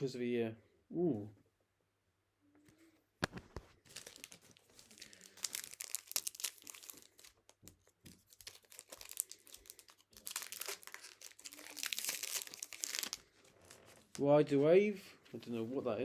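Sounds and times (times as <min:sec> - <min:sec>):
wrapper crinkling and tearing: 0:03.2 - 0:14.2.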